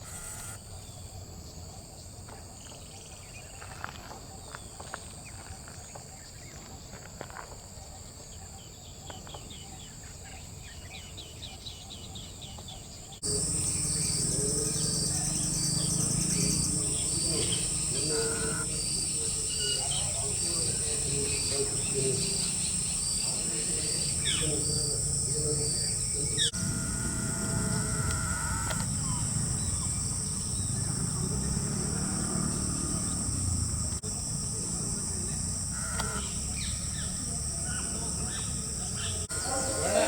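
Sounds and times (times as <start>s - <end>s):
high insect buzz: 0.0s - 1.0s, 13.2s - 40.0s
cricket-like chirp: 0.0s - 40.0s
bird calls: 8.4s - 34.0s, 35.0s - 40.0s.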